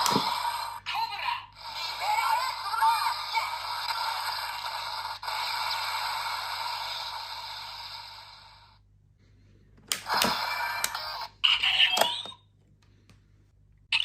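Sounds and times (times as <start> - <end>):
toy electronic sound effect: 0.0 - 7.9, 10.1 - 12.4.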